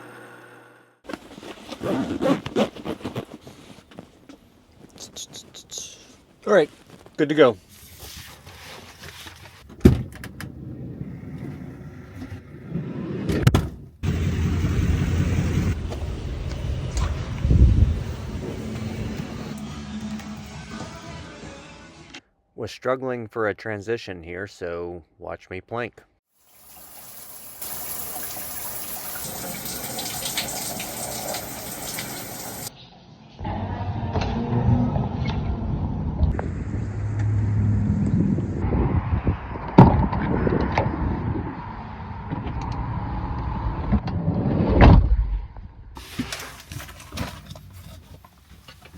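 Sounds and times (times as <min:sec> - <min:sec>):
van door shutting with a thud: 0:09.8 - 0:10.2
van rumbling on the road: 0:14.0 - 0:19.5, 0:33.4 - 0:44.0
water spraying: 0:26.5 - 0:32.7.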